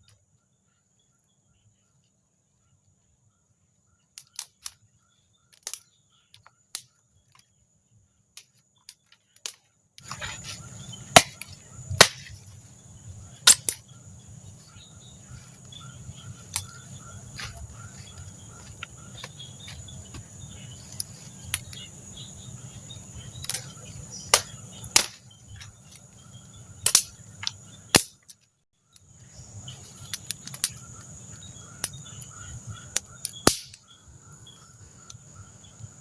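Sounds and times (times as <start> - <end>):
high-pitched insect chirring: 10.0 - 28.2.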